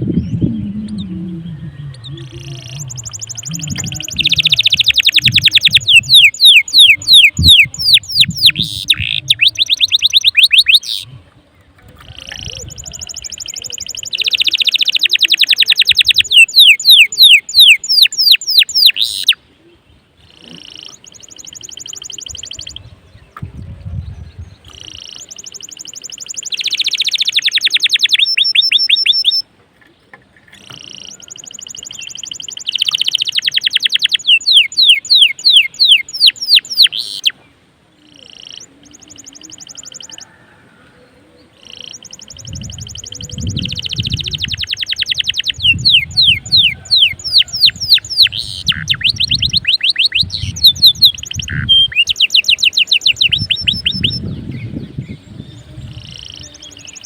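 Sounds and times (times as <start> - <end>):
low rumbling noise: 0.0 - 6.1
canary singing: 0.0 - 11.2, 11.9 - 23.4, 24.3 - 29.5, 30.5 - 37.4, 38.0 - 40.4, 41.1 - 57.0.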